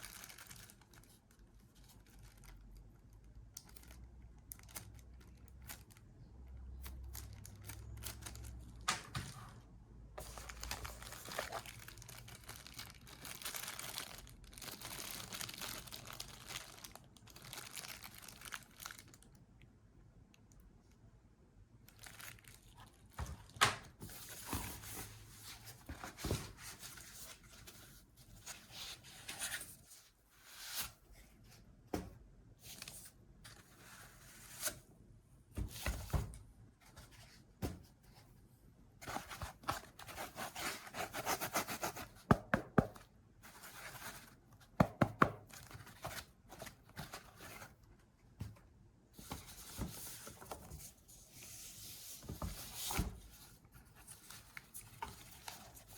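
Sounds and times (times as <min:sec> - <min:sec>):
packaging rustling and tearing: 0:00.0 - 0:06.0, 0:10.2 - 0:19.3, 0:21.9 - 0:27.8.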